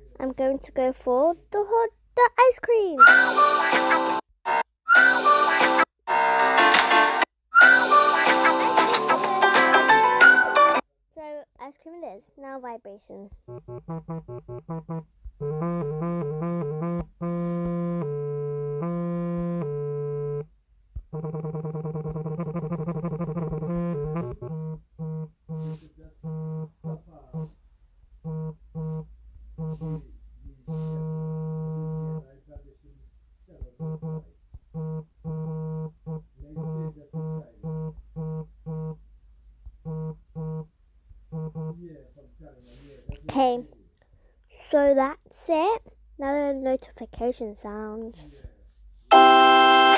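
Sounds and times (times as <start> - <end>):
phone vibration motor buzzing: 13.5 - 20.5, 21.1 - 27.5, 28.2 - 30.1, 30.7 - 32.3, 33.8 - 36.3, 37.2 - 39.0, 39.8 - 40.7.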